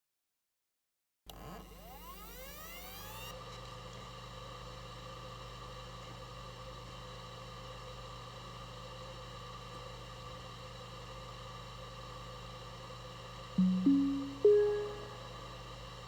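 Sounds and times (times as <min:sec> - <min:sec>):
electronic drone of held tones: 0:13.6 - 0:15.2.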